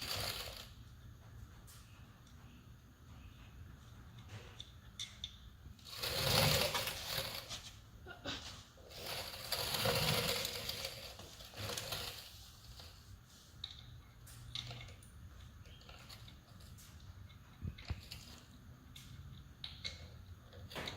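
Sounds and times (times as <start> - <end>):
rapid mechanical clicking and rattling: 0.0 - 0.8, 5.2 - 7.7, 8.8 - 13.0.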